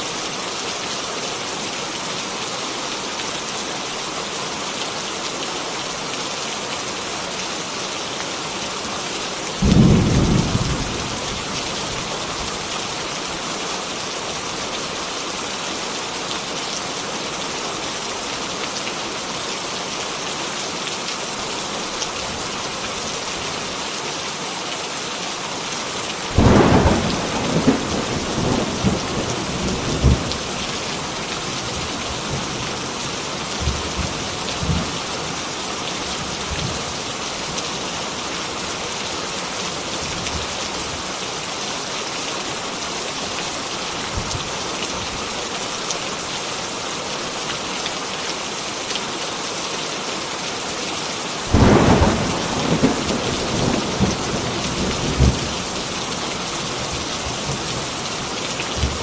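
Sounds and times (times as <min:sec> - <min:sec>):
heavy rain falling: 0:00.0 - 0:59.0
long peal of thunder with cracks: 0:26.4 - 0:30.5, 0:51.5 - 0:55.8
thunder clap: 0:51.5 - 0:55.5.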